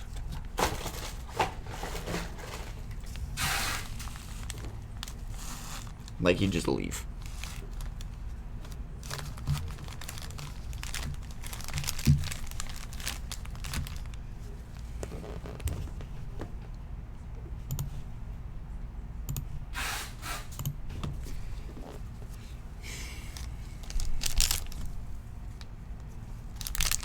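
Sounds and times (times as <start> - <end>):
plastic packaging crinkling and tearing: 0.2 - 15.7, 23.2 - 25.2, 26.4 - 27.0.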